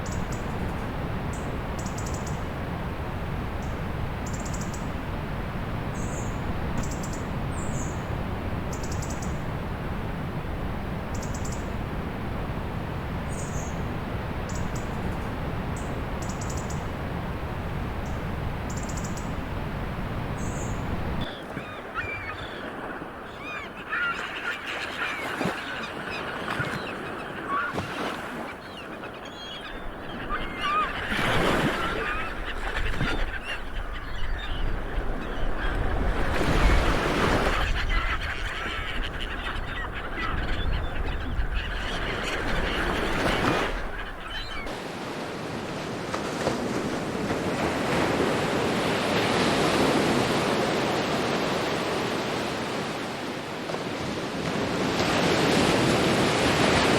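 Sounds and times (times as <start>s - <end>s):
waves washing in: 9.4s - 38.8s, 42.0s - 56.9s
birds honking: 21.2s - 44.8s.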